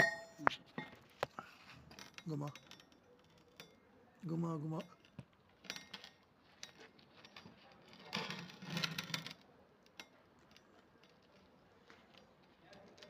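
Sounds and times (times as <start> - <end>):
metal parts clicking and rattling: 1.8 - 3.8, 4.6 - 13.0.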